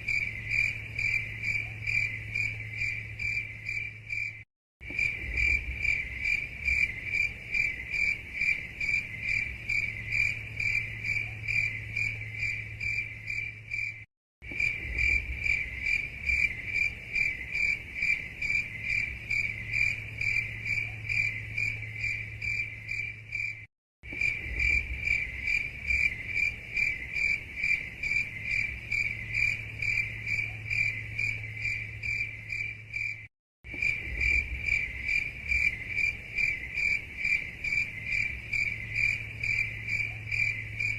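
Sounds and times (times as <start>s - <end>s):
cricket chirping: 0.0s - 40.9s.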